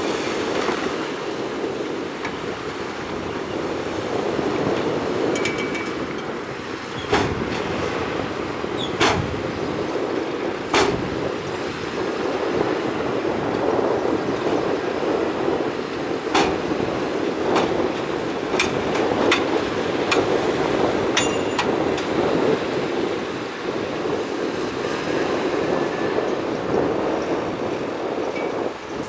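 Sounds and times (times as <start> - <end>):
sharp metal clanks: 21.2 - 22.1.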